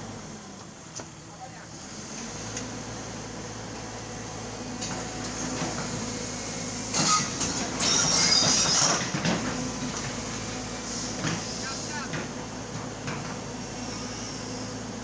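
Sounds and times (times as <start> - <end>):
excavator diesel engine running: 0.0 - 15.0
high-pitched metallic squeal: 6.9 - 9.0.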